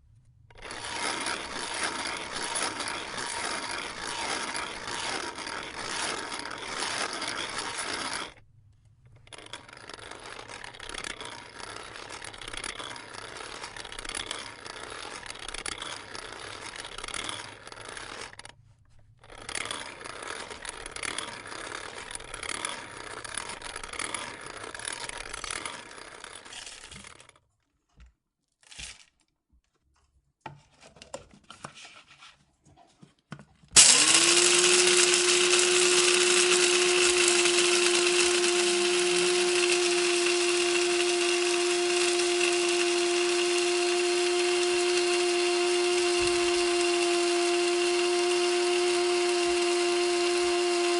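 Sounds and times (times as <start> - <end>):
coffee beans rattling and crunching: 0.6 - 8.4, 33.8 - 50.9.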